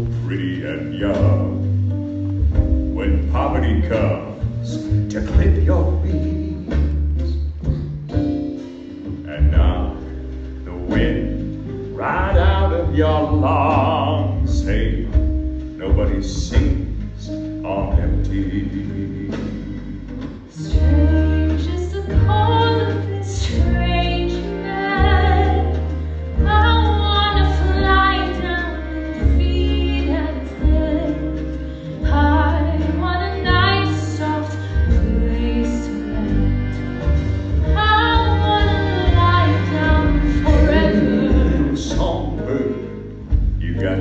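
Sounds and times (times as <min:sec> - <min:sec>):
band playing: 0:00.0 - 0:44.0
heavy sustained bass notes: 0:00.0 - 0:44.0
woman singing: 0:20.6 - 0:36.8, 0:37.6 - 0:41.8.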